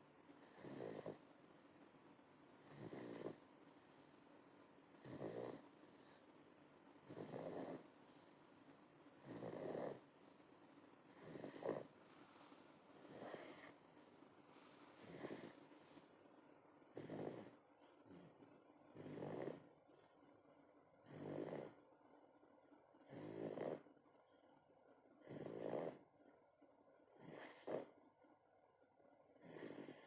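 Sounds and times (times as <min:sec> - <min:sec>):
pet snoring: 0:00.4 - 0:01.8, 0:02.6 - 0:04.4, 0:05.0 - 0:06.3, 0:07.0 - 0:16.1, 0:16.9 - 0:20.2, 0:21.0 - 0:22.4, 0:23.0 - 0:24.1, 0:25.2 - 0:26.1, 0:27.1 - 0:28.0, 0:29.3 - 0:30.0.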